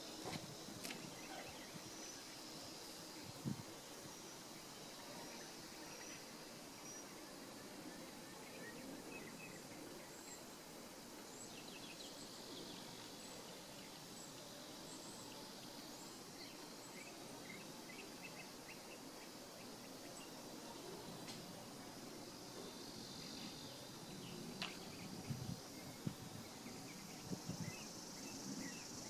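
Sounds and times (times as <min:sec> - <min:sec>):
outdoor background hiss: 0:00.0 - 0:29.0.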